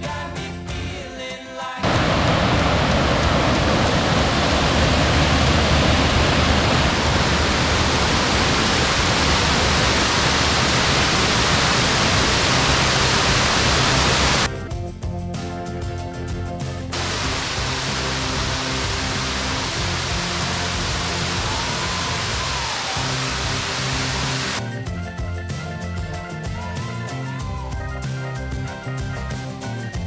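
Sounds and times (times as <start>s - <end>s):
music: 0.0s - 30.0s
waterfall roaring: 1.8s - 14.5s, 16.9s - 24.6s.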